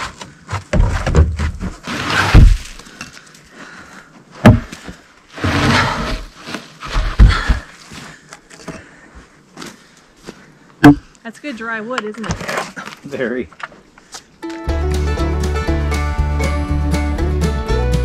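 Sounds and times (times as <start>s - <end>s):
scraping and crunching: 0.0s - 3.5s, 4.4s - 8.8s.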